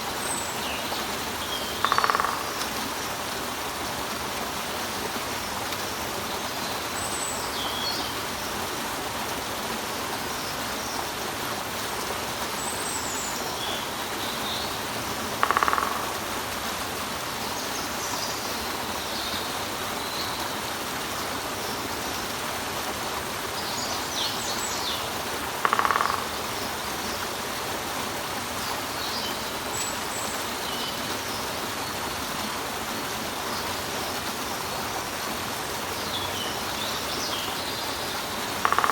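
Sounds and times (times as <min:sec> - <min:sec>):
woodpecker: 0:01.4 - 0:02.9, 0:15.2 - 0:16.4, 0:25.5 - 0:26.6, 0:38.4 - 0:38.9.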